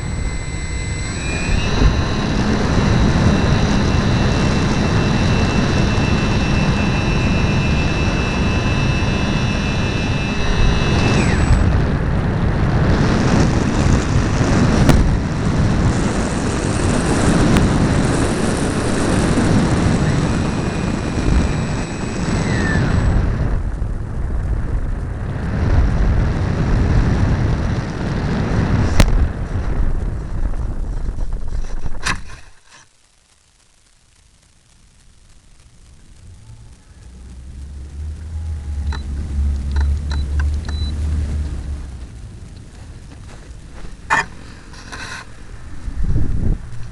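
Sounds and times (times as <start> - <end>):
wind buffeting microphone: 0.0 - 32.0, 37.1 - 46.9
heavy rumbling: 0.0 - 32.1, 33.8 - 46.9
high motor whine: 0.0 - 46.9
click: 38.8 - 40.9.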